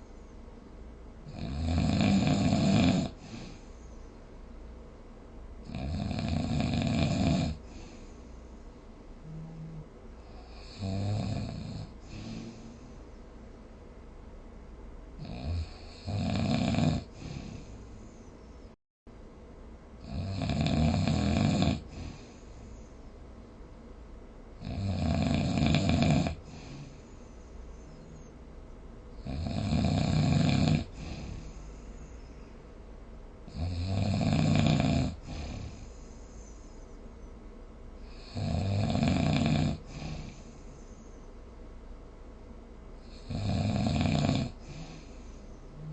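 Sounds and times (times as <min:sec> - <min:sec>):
quiet breathing: 0:00.0 - 0:05.2, 0:06.2 - 0:13.8, 0:15.2 - 0:18.8, 0:20.8 - 0:24.1, 0:25.5 - 0:45.9
person snoring: 0:01.3 - 0:03.6, 0:05.7 - 0:08.0, 0:09.2 - 0:13.0, 0:15.2 - 0:18.0, 0:20.0 - 0:22.5, 0:24.6 - 0:27.0, 0:29.2 - 0:32.2, 0:33.5 - 0:36.6, 0:38.0 - 0:40.7, 0:43.0 - 0:45.9
snort: 0:01.3 - 0:03.6, 0:05.7 - 0:08.0, 0:15.2 - 0:17.8, 0:20.0 - 0:22.6, 0:24.6 - 0:27.1, 0:29.2 - 0:32.2, 0:33.5 - 0:36.6, 0:38.0 - 0:40.8, 0:43.0 - 0:45.9.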